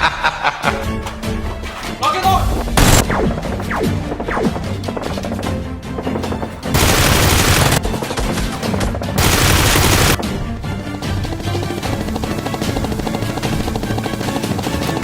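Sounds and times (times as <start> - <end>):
background music: 0.0 - 15.0
rapid gunfire: 2.8 - 10.3.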